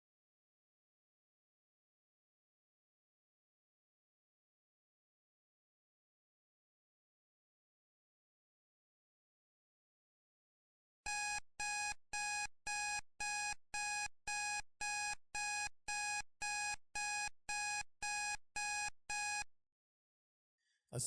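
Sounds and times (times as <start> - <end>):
electronic timer alarm beeping: 11.1 - 19.5.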